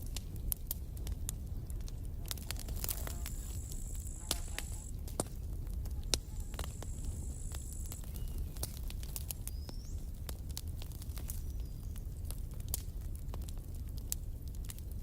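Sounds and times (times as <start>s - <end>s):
campfire crackling and popping: 0.0s - 15.0s.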